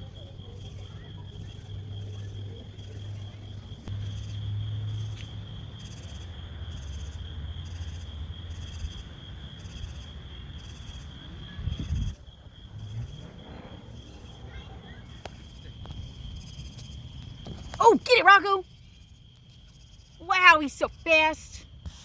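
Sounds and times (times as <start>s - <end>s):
pulsing insect chirp: 0.0s - 22.0s
insects trilling high: 16.3s - 21.9s.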